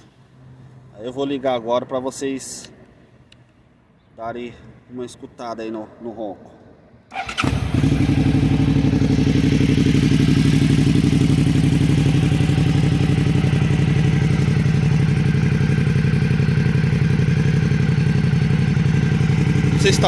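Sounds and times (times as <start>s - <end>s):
motorcycle engine idling: 7.2s - 20.0s.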